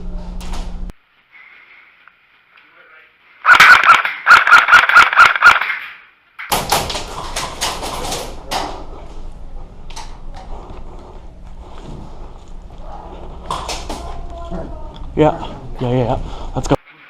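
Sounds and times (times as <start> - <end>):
scattered pops: 3.4 - 7.7.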